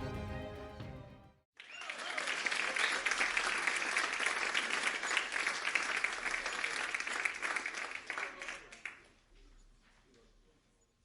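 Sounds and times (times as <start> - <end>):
audience applauding: 0.0 - 9.1.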